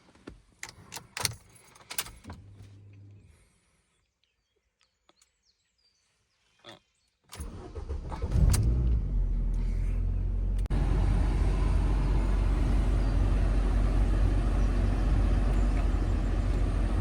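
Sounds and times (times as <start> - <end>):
car engine idling: 7.4 - 17.0.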